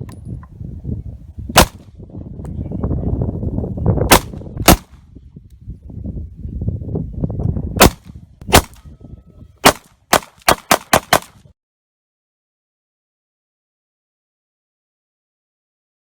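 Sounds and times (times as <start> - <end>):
pistol shots: 1.6 - 1.8, 4.1 - 5.0, 7.8 - 8.8, 9.6 - 11.4.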